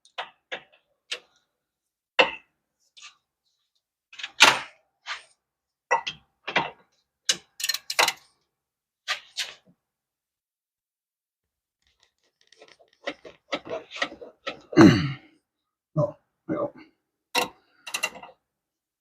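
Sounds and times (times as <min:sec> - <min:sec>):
hand tools clicking and knocking: 0:12.4 - 0:14.7, 0:17.4 - 0:18.4.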